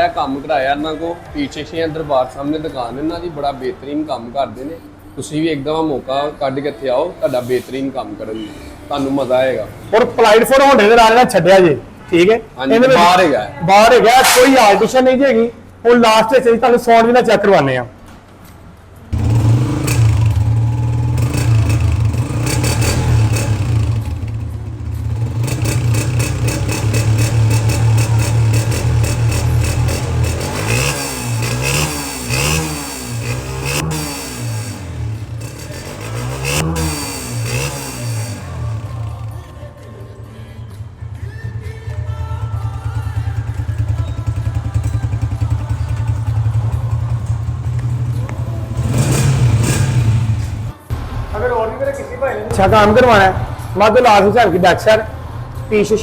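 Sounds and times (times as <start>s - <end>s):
light engine clatter: 19.2s - 39.1s
motorcycle engine running: 19.2s - 39.7s, 40.6s - 50.9s.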